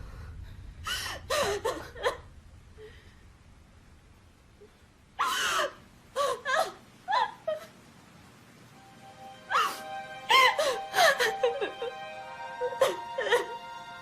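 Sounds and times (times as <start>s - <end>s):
woman wailing: 5.2s - 7.7s, 9.4s - 12.0s
steady held music tone: 8.5s - 14.0s.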